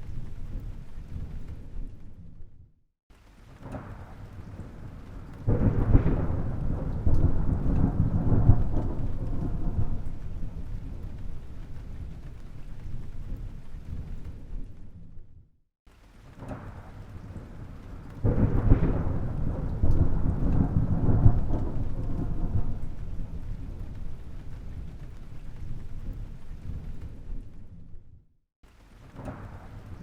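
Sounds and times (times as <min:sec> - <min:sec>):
thunder rumbling and crashing: 0:03.6 - 0:15.2, 0:16.4 - 0:28.1.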